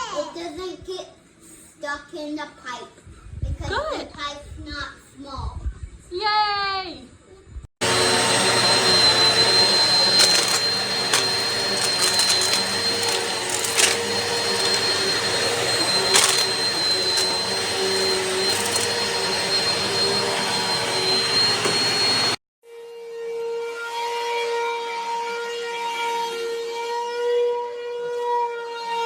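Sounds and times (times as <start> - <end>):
upright vacuum cleaner whining: 7.8 - 22.4
debris clicking and rattling: 9.2 - 19.2.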